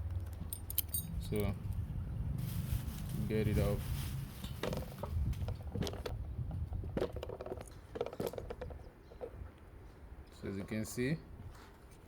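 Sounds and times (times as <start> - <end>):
metal tools clicking and knocking: 0.1 - 1.6.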